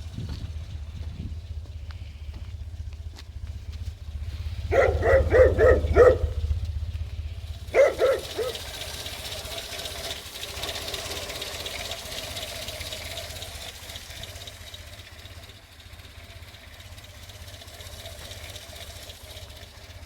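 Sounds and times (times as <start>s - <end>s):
car engine idling: 0.0s - 20.0s
dog barking: 4.6s - 6.6s, 7.6s - 9.0s.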